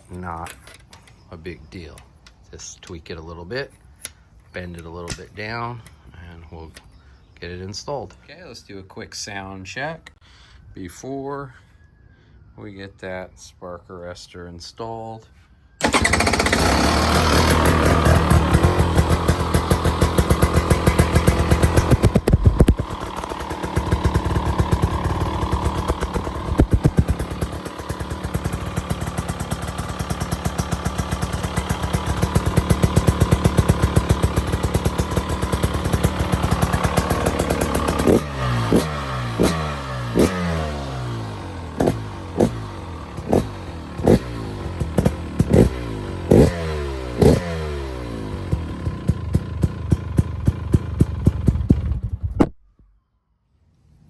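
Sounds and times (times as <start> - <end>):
two-stroke motorcycle engine revving: 15.8 - 52.4.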